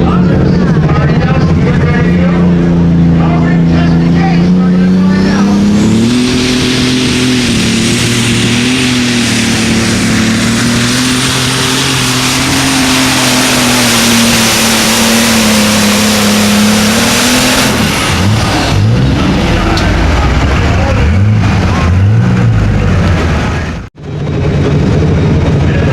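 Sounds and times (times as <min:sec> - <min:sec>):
tractor engine roaring: 0:00.0 - 0:25.9.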